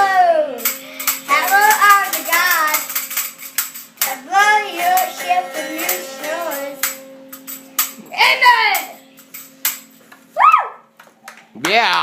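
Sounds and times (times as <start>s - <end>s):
child singing high notes: 0.0s - 2.9s
steady held instrument note: 0.6s - 10.4s.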